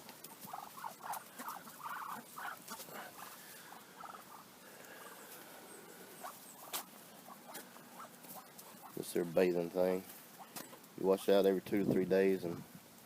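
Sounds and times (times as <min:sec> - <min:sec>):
poultry calling: 0:00.0 - 0:11.2.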